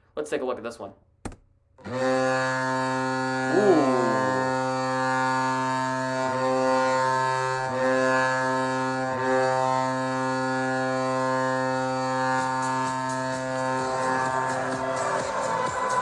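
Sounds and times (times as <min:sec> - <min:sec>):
arena goal horn blast: 0:03.5 - 0:04.6
siren wailing: 0:03.5 - 0:04.8.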